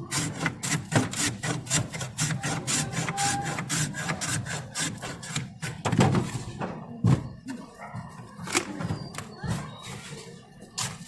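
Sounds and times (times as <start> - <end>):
ice shaving rasping scrapes: 0.0 - 5.8.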